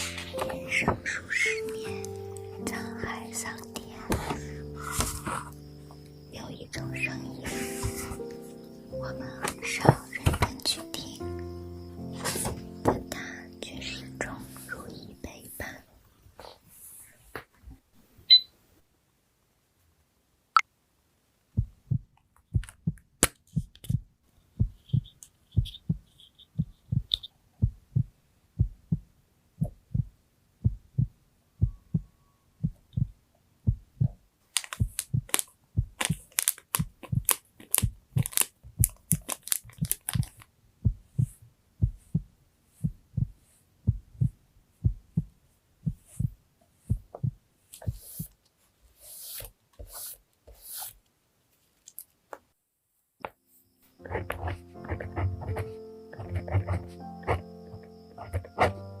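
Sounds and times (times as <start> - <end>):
heartbeat thuds: 21.6 - 34.2, 34.8 - 36.2, 36.8 - 48.4
sharp crackling clicks: 34.5 - 40.5.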